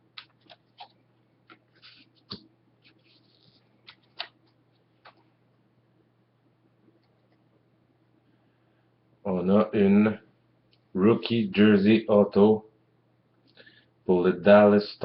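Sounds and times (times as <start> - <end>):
cards clicking and rustling: 0.1 - 5.3.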